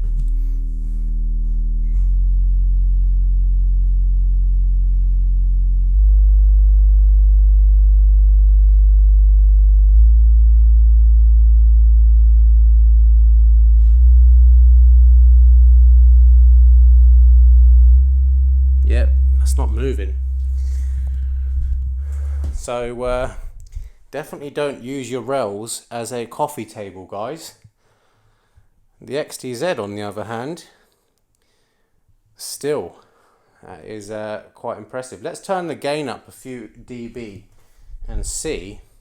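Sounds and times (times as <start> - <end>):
deep bass test tone: 0.0 - 24.0.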